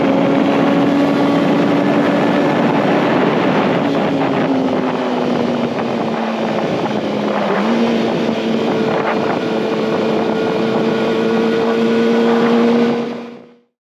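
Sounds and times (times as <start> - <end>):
wind rush: 0.0 - 13.4
motorcycle engine running: 0.0 - 13.7.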